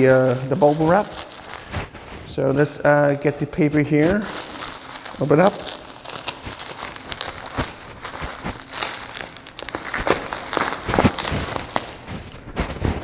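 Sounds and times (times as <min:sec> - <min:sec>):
packing paper rustling: 0:00.0 - 0:02.8, 0:03.8 - 0:13.0.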